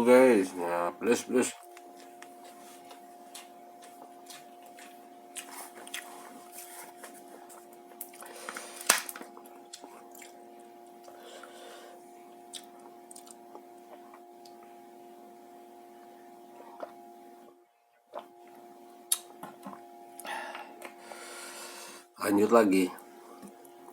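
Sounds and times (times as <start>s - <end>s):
chewing with wet smacks: 1.7s - 8.4s, 9.3s - 11.2s, 12.5s - 14.7s.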